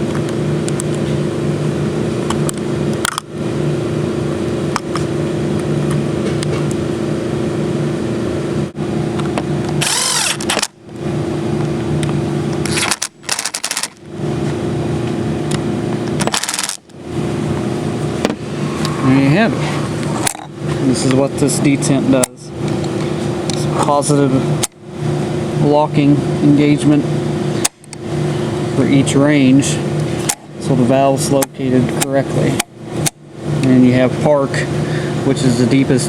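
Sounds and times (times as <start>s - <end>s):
mechanical hum with low drone: 0.0s - 36.0s
loud handling noise: 9.1s - 23.9s.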